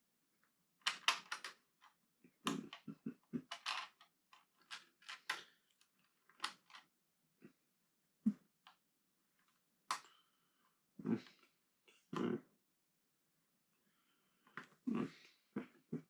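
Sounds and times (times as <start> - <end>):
plastic bricks clicking: 0.8 - 1.6, 3.4 - 6.8.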